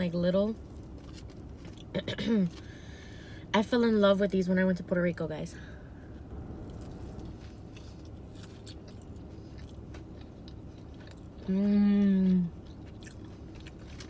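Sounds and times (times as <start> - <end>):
chewing fried food: 0.5 - 3.3, 6.6 - 14.0.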